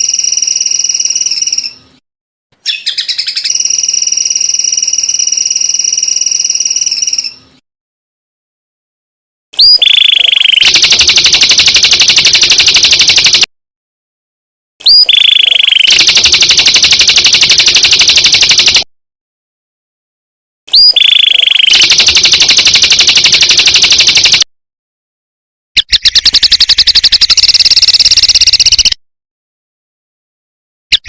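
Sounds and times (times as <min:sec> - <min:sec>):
bird song with buzzing trill: 0:02.7 - 0:04.0.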